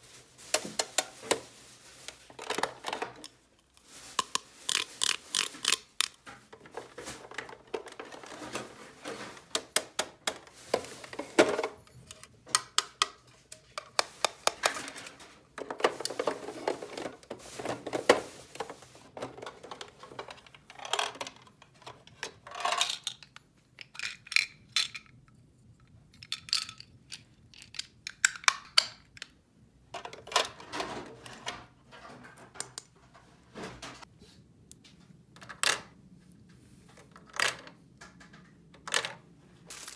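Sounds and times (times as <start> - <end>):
rustling: 0.0 - 12.3, 13.9 - 20.3, 39.7 - 39.9
plastic toy pieces clicking: 4.2 - 6.2, 26.2 - 29.3.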